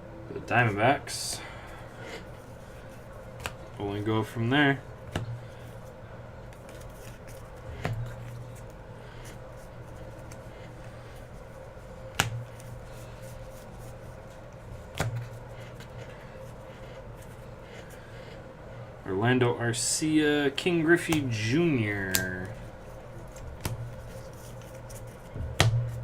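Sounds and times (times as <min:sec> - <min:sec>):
steady low hum: 0:00.0 - 0:26.0
hands handling trading cards: 0:05.1 - 0:18.4, 0:21.0 - 0:26.0.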